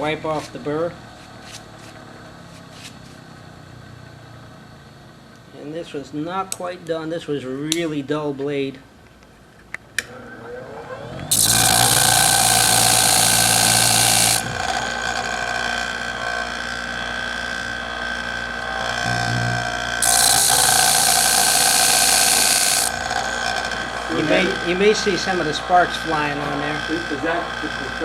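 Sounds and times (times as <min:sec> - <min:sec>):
sharpener motor humming: 0:11.1 - 0:28.0
blade grinding on abrasive wheel: 0:11.3 - 0:28.0.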